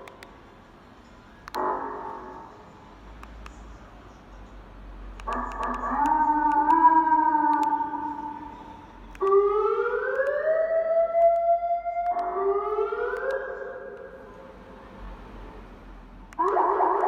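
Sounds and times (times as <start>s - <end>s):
electronic siren wailing: 5.3s - 14.3s, 16.4s - 17.0s.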